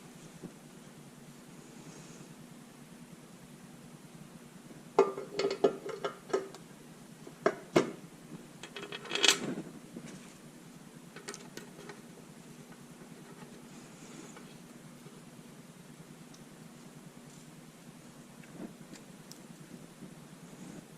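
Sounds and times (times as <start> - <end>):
metal tools clinking: 8.6 - 9.4.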